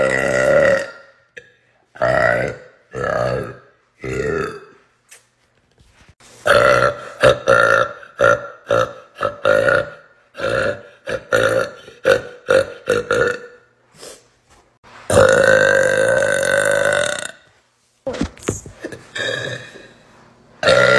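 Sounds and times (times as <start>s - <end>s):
woman burping: 0.0s - 4.8s, 6.5s - 13.6s, 15.1s - 17.4s, 18.8s - 19.9s, 20.6s - 20.9s.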